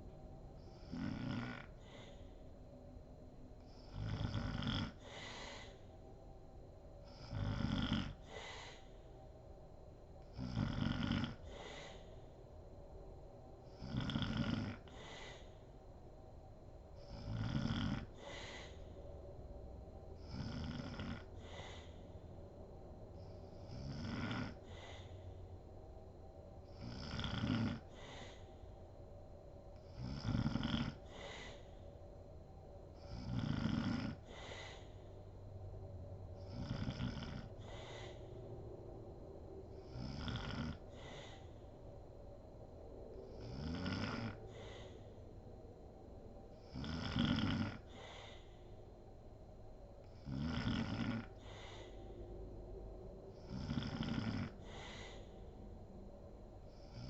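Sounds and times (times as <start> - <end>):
woman snoring: 0.6 - 2.4, 3.7 - 5.9, 7.1 - 9.0, 10.2 - 12.3, 13.7 - 15.7, 17.0 - 19.0, 20.2 - 22.1, 23.3 - 25.2, 26.7 - 28.6, 29.8 - 31.9, 33.0 - 35.1, 36.4 - 38.3, 39.8 - 41.7, 43.2 - 45.1, 46.6 - 48.6, 50.1 - 52.1, 53.4 - 55.5, 56.7 - 57.0.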